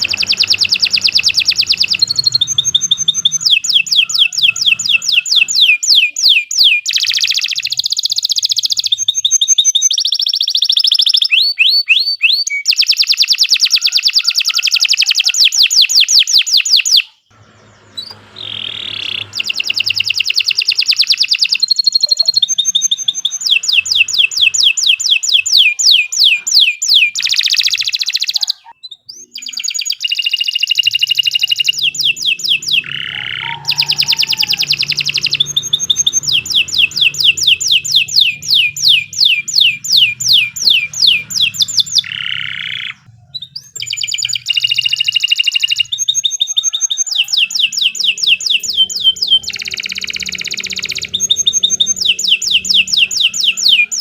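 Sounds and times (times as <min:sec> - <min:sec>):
canary singing: 0:00.0 - 0:54.0.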